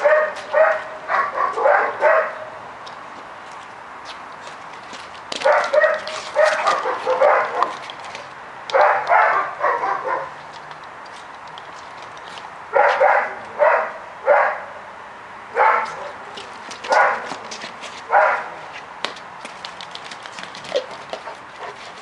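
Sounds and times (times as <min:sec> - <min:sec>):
dog barking: 0:00.0 - 0:02.5, 0:05.4 - 0:07.8, 0:08.7 - 0:10.4, 0:12.7 - 0:14.8, 0:15.5 - 0:16.2, 0:16.9 - 0:17.3, 0:18.1 - 0:18.6.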